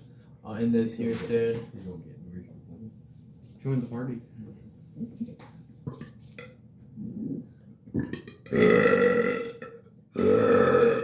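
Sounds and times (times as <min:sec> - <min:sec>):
man burping loudly: 0:08.0 - 0:11.0.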